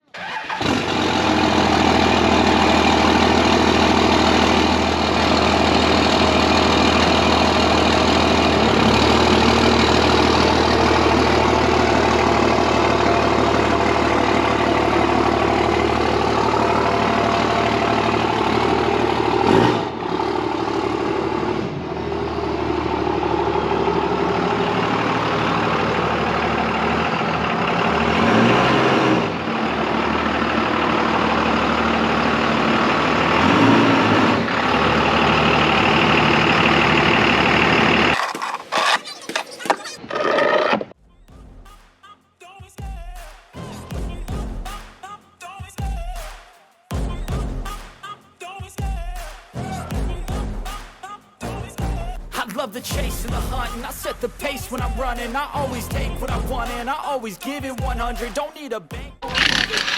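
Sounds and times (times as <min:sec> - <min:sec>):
diesel engine idling: 0:00.1 - 0:38.2, 0:53.1 - 0:58.2.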